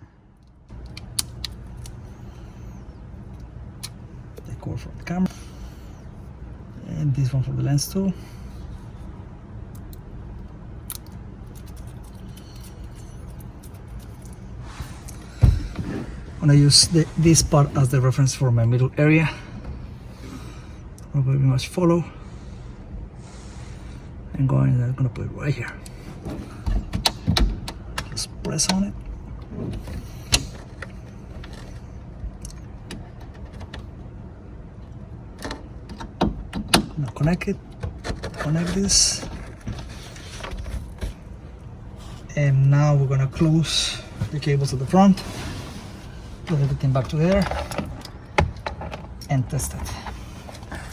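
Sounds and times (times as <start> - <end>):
steady low hum: 0.0 - 50.9
clicks and rustling of small parts: 10.9 - 14.4.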